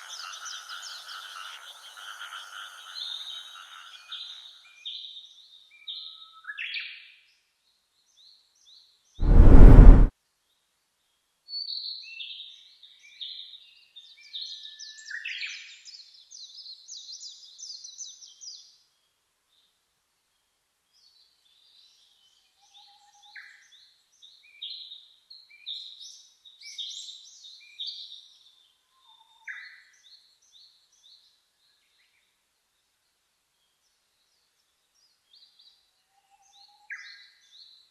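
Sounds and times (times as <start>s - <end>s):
short loud burst of noise: 9.2s - 10.1s.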